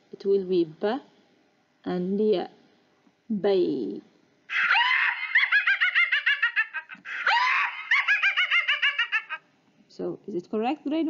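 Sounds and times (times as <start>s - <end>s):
cartoon witch cackling: 4.5s - 9.4s.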